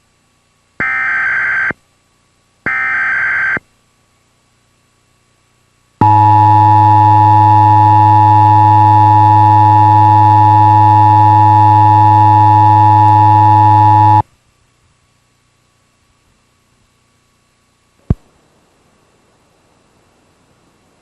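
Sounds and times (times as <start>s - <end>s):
low hum: 6.0s - 14.2s.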